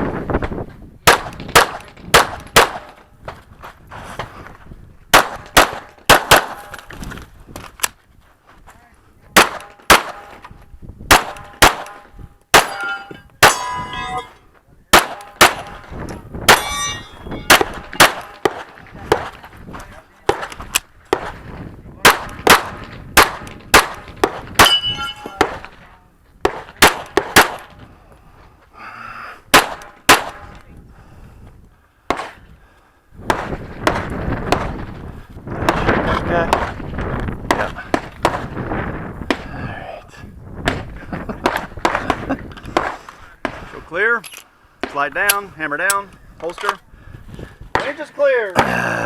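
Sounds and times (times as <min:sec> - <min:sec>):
rapid pistol fire: 0:01.1 - 0:02.9, 0:05.1 - 0:06.7, 0:09.4 - 0:10.3, 0:11.1 - 0:12.0, 0:14.9 - 0:15.9, 0:22.0 - 0:24.7, 0:26.5 - 0:27.7, 0:29.5 - 0:30.4
steel targets clanging: 0:11.3 - 0:15.9, 0:16.5 - 0:18.8, 0:24.6 - 0:25.6.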